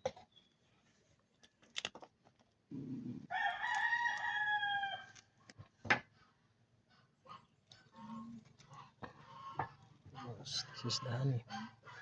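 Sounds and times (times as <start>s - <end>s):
rooster crowing: 3.3s - 5.2s.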